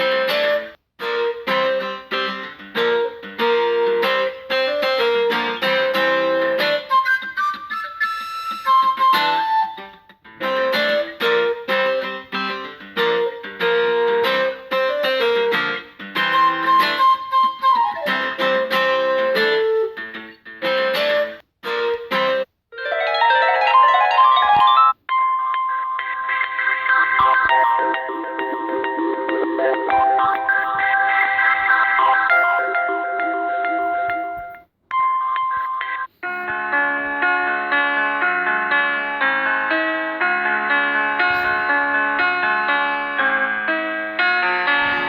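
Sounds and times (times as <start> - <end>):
plucked ringtone melody: 22.7 - 36.2.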